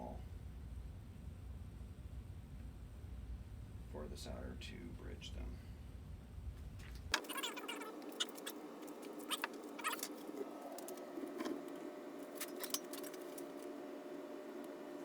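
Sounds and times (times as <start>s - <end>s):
steady low hum: 0.0s - 15.0s
short squeaky scrapes: 9.2s - 10.2s.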